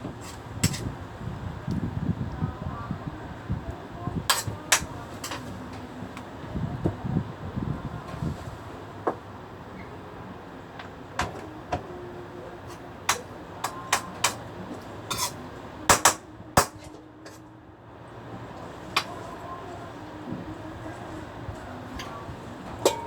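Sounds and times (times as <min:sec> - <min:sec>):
kitchen utensils and dishes clattering: 0:00.2 - 0:00.9, 0:15.1 - 0:16.0, 0:22.0 - 0:23.0.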